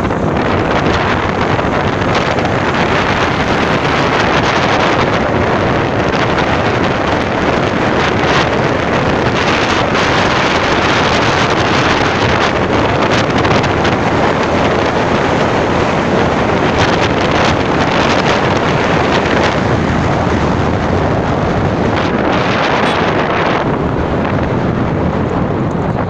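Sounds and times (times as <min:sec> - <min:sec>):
waterfall roaring: 0:00.3 - 0:06.1.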